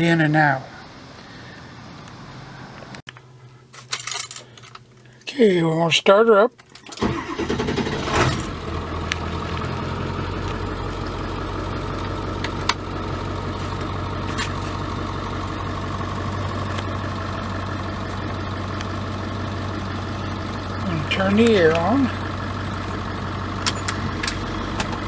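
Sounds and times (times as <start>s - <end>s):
diesel engine idling: 7.0s - 25.0s.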